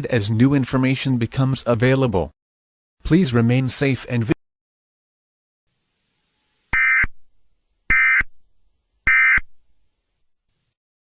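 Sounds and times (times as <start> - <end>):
buzzy data bursts: 5.7 - 8.4, 9.0 - 9.6.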